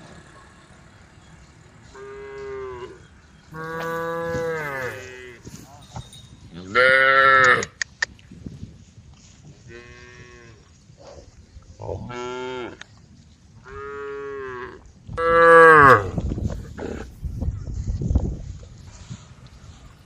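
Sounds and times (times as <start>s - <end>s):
cows mooing: 1.9s - 5.5s, 13.6s - 17.1s.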